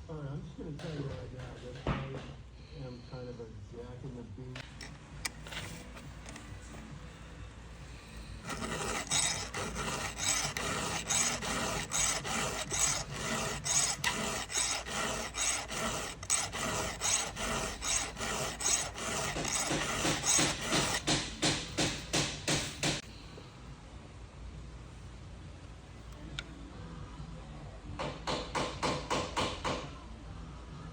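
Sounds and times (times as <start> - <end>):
file rasping on chainsaw chain: 8.4 - 23.0.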